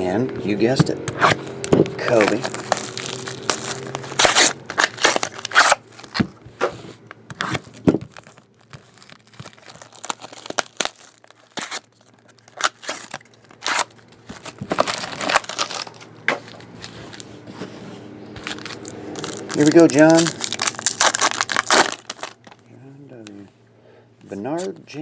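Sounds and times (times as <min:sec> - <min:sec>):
card pack wrappers tearing: 0:01.1 - 0:06.4, 0:07.0 - 0:17.3, 0:18.4 - 0:22.6.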